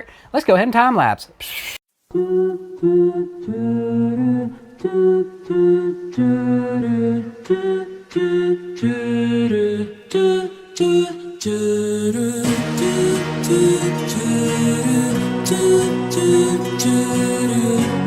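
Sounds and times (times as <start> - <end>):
wordless voices humming chords: 12.2 - 18.0.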